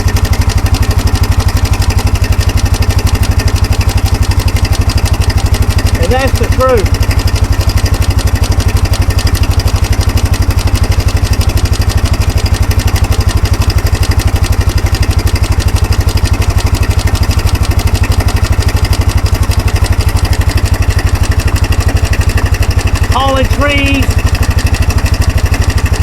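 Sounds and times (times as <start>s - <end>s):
atv engine idling: 0.0s - 26.0s.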